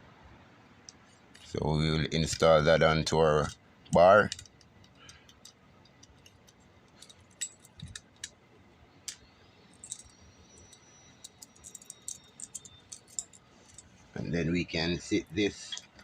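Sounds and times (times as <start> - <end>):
saw chain clinking: 4.3 - 8.3, 9.1 - 14.0.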